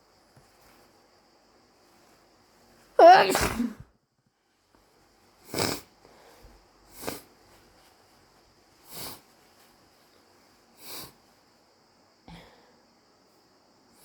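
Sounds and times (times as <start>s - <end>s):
person sniffing: 3.0s - 3.8s, 5.5s - 7.3s, 8.8s - 9.3s, 10.8s - 11.2s
person sneezing: 3.0s - 3.9s.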